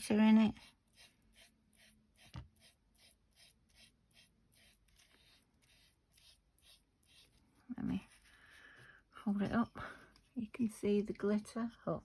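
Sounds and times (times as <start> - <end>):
brush swishing: 0.5 - 8.6.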